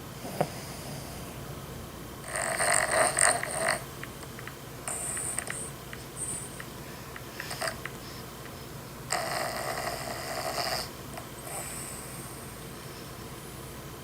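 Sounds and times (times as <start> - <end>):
dog snoring: 0.2 - 1.3, 2.2 - 3.9, 4.9 - 6.6, 7.4 - 8.2, 9.1 - 12.5.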